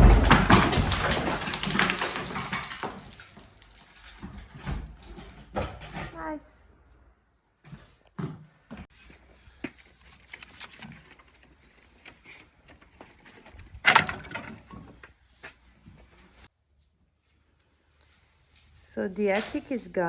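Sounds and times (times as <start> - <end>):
loud crash: 0.0 - 2.6
wood knocks and clatters: 0.0 - 6.4, 9.6 - 16.4.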